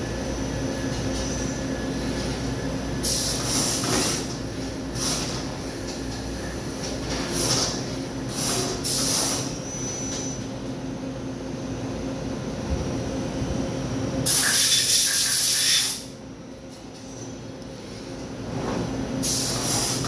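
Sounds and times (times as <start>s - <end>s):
hissing spray bursts: 14.3s - 16.1s
loud hiss: 14.3s - 16.1s.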